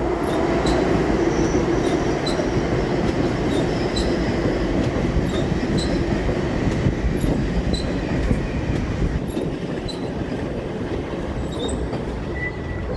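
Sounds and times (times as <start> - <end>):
train rolling rumble: 0.0 - 12.9
train wheels squealing: 0.2 - 2.6, 3.4 - 6.2, 7.2 - 10.2, 11.3 - 12.9.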